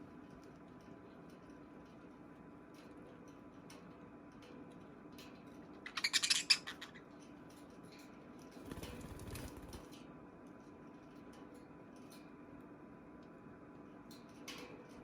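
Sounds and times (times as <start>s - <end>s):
birds clicking in cage: 2.8s - 10.0s
rapid scratchy clicking: 8.7s - 9.9s.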